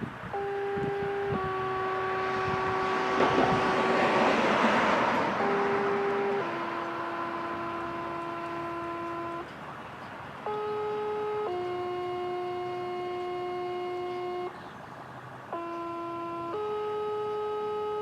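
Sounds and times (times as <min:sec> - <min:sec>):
two-tone paging tones: 0:05.1 - 0:09.5, 0:10.4 - 0:14.6, 0:15.5 - 0:18.0.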